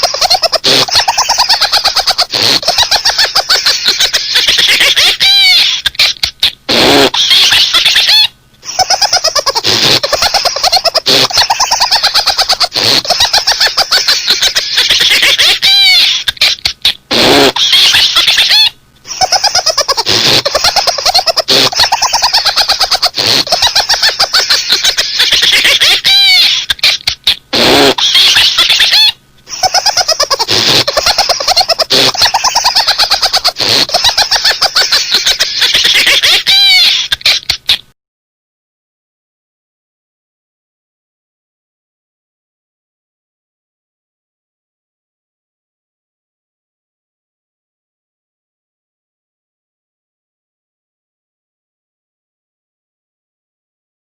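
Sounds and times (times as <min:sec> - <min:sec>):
high-pitched rapid laughter: 0:00.0 - 0:37.9.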